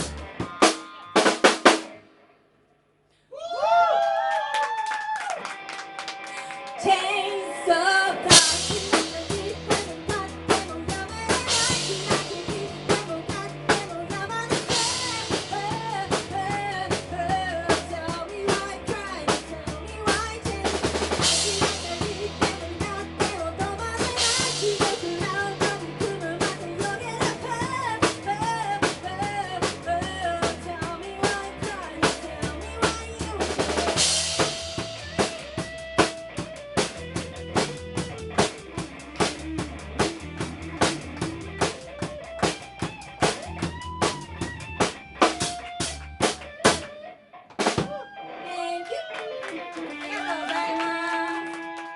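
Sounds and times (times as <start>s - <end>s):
bass line: 0.0s - 1.3s, 8.3s - 46.9s
drum kit beat: 0.0s - 2.0s, 8.3s - 48.0s.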